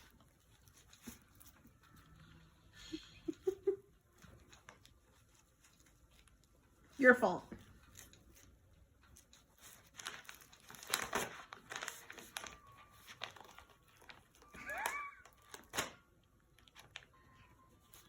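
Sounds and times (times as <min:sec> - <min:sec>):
bag crinkling and rustling: 0:07.6 - 0:17.1.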